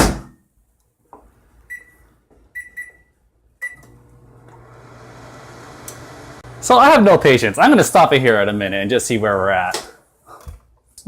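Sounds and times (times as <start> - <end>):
microwave oven humming: 3.7 - 7.6.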